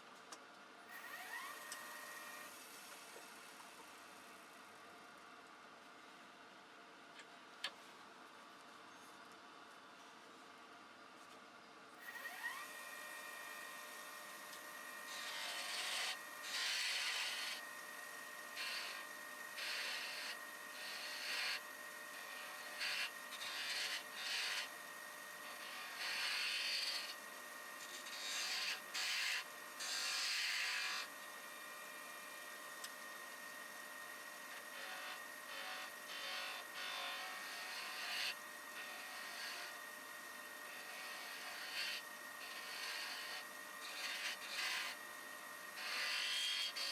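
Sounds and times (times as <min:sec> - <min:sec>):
wood lathe whining: 0:01.0 - 0:02.6, 0:12.1 - 0:46.9
wood rubbing and rasping: 0:15.1 - 0:17.6, 0:18.6 - 0:19.0, 0:19.6 - 0:24.7, 0:25.4 - 0:27.2, 0:27.8 - 0:31.1, 0:40.8 - 0:45.0, 0:45.8 - 0:46.9.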